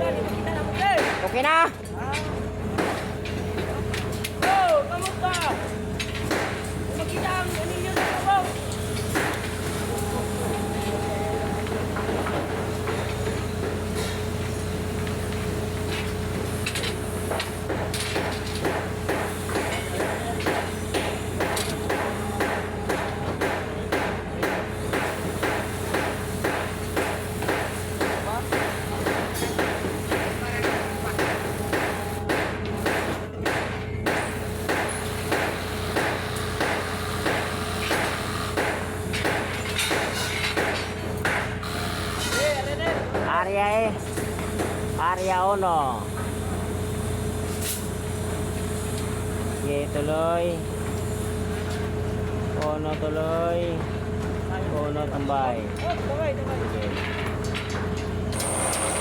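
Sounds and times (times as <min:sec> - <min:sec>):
constant machine whine: 0:00.0 - 0:59.0
construction machinery humming: 0:00.0 - 0:59.0
hammer strikes: 0:00.9 - 0:01.3, 0:06.2 - 0:08.3, 0:09.1 - 0:09.5, 0:17.3 - 0:41.5.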